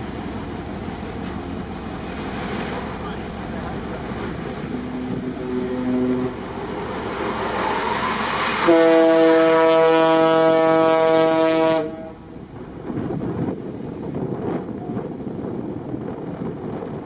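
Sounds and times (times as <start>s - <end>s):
sea noise: 0.0s - 17.0s
wind: 0.0s - 17.0s
ship's horn blast: 1.4s - 6.6s, 8.6s - 12.4s.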